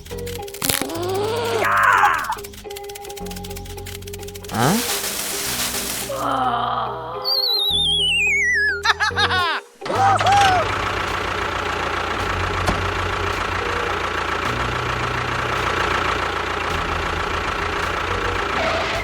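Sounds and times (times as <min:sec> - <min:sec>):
engine idling with knocking: 0:00.0 - 0:04.6, 0:09.8 - 0:19.0.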